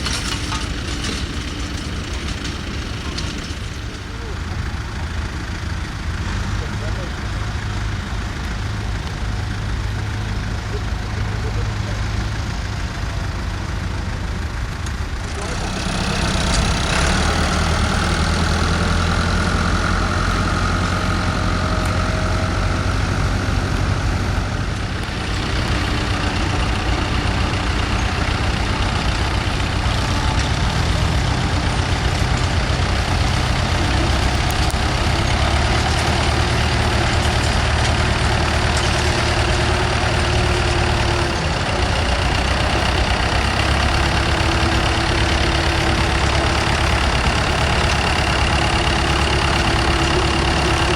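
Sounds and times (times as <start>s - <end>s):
tractor engines running: 0.0s - 50.9s.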